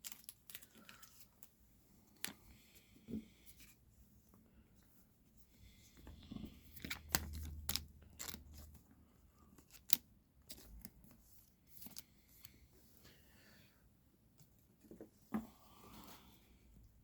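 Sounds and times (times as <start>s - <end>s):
plastic sleeve rustling: 6.1s - 12.4s.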